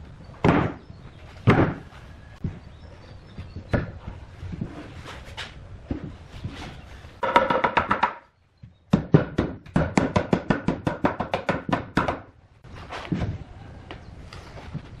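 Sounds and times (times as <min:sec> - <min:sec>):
sharp knocks on wood: 0:07.2 - 0:08.2, 0:08.9 - 0:12.3.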